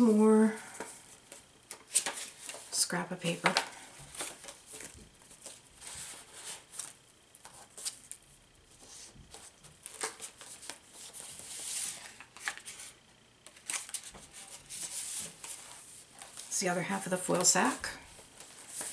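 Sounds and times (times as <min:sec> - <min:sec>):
paper rustling: 0:00.8 - 0:08.2, 0:08.8 - 0:16.6, 0:17.3 - 0:18.9
paper crinkling: 0:03.4 - 0:08.2, 0:08.8 - 0:16.6, 0:18.1 - 0:18.9.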